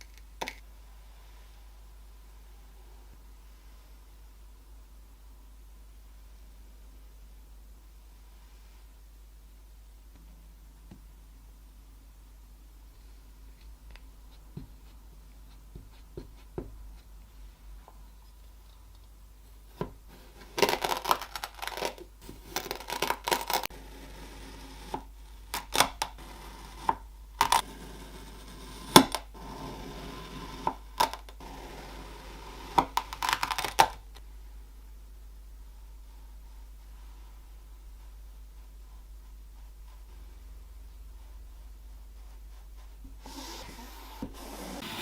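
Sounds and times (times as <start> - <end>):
faint taps: 13.6 - 17.1.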